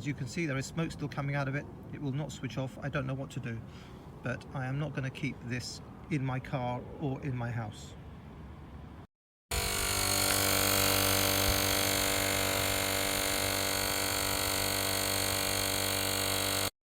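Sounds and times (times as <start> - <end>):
compressor motor humming: 9.5 - 16.8.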